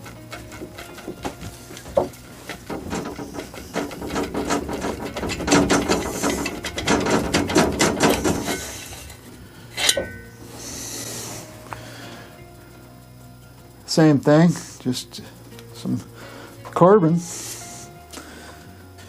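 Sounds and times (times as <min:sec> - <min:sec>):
hand ratchet clicking: 0:00.0 - 0:10.3
metallic clank: 0:00.0 - 0:10.5.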